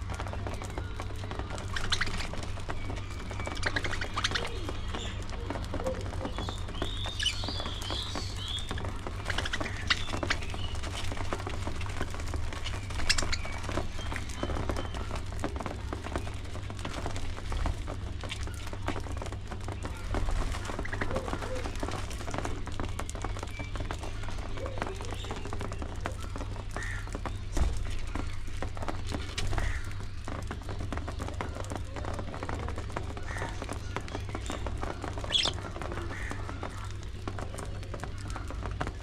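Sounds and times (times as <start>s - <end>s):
budgerigars chirping and warbling: 0.7s - 15.1s, 33.1s - 36.9s.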